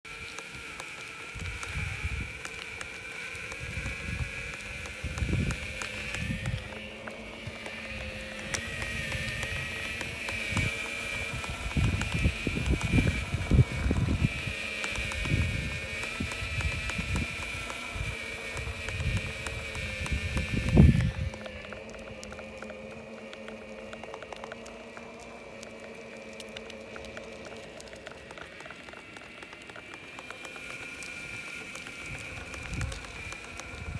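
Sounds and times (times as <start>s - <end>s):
electric skateboard motors whining: 0.0s - 33.9s
low road rumble: 0.0s - 33.9s
small irregular knocks and clicks: 0.1s - 33.9s
wind on microphone: 1.3s - 21.7s, 32.0s - 33.9s.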